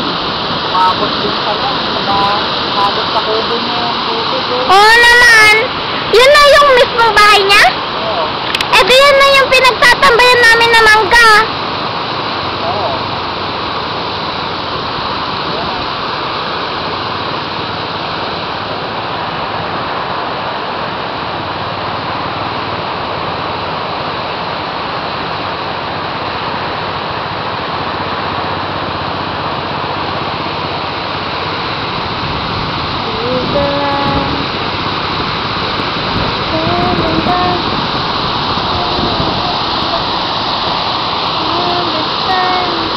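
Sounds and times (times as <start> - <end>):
water rushing through a dam: 0.0 - 42.9
person's voice: 0.7 - 11.5, 33.0 - 34.4, 36.5 - 37.7, 38.7 - 40.1, 41.4 - 42.9.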